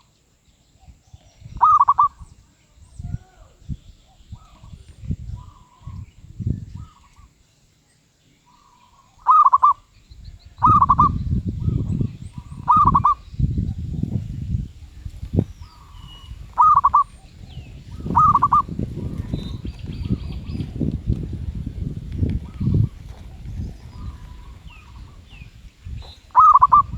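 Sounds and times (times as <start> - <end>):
dove cooing: 1.6 - 2.2, 9.2 - 9.9, 10.6 - 13.3, 15.6 - 26.9.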